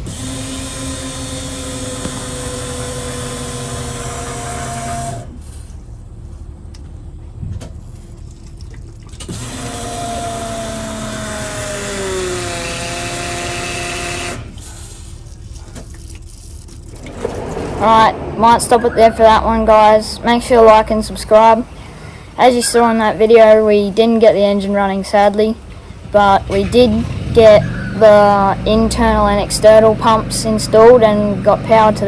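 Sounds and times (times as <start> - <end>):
electric motor whining: 0.0 - 5.4, 9.3 - 14.6.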